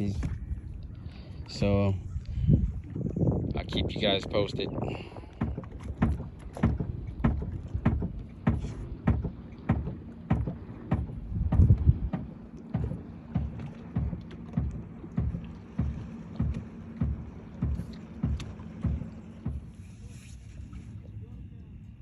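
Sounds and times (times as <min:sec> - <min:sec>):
water slapping against boat hull: 0:00.0 - 0:22.0
faint low hum: 0:06.9 - 0:22.0.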